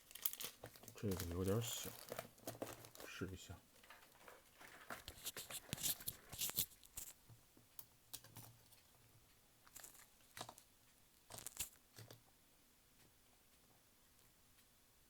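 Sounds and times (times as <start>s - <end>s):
small metal parts clicking and scraping: 0.1s - 7.2s, 9.7s - 10.6s, 11.3s - 12.1s.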